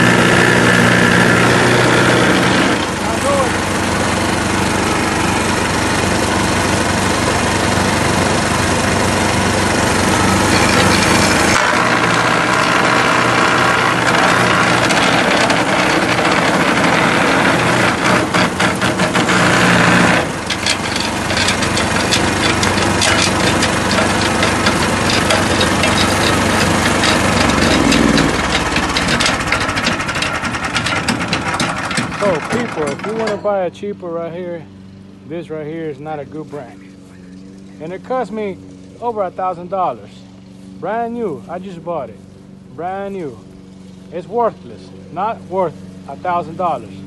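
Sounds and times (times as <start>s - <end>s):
crackling rattle of wood chipping: 0.0s - 33.7s
wood chipper engine running: 0.0s - 47.0s.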